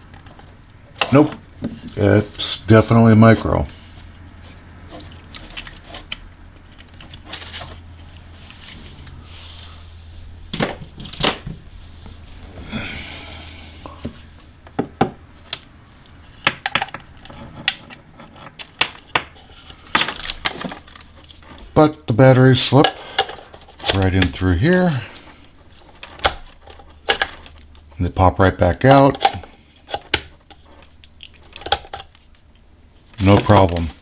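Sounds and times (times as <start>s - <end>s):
faint low hum: 0.0s - 34.0s
plastic scrape: 3.4s - 9.9s.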